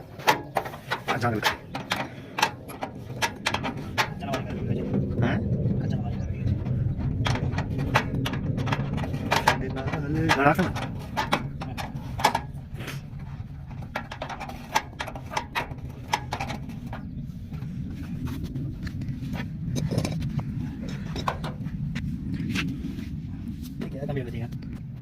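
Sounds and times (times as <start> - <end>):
tools clicking and knocking: 0.0 - 4.5, 7.0 - 17.1
steady low hum: 0.0 - 25.0.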